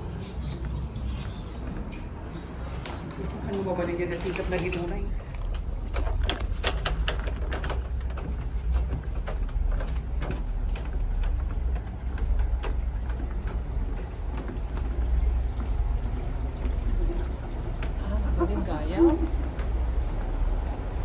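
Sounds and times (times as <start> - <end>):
steady low rumble: 5.0 - 21.0.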